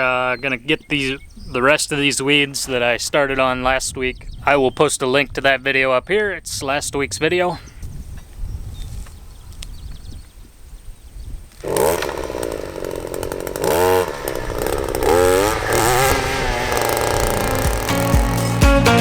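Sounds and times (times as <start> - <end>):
string trimmer engine revving: 11.5 - 19.0.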